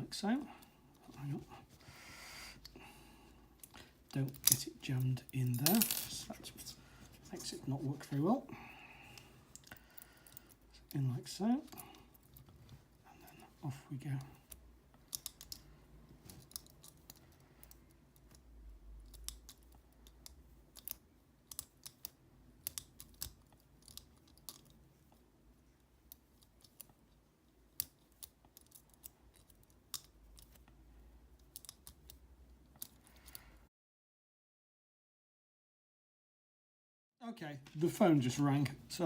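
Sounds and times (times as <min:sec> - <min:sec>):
metallic clicks of lock picking: 0:14.5 - 0:15.7, 0:16.3 - 0:24.8, 0:27.8 - 0:30.7, 0:31.4 - 0:32.2.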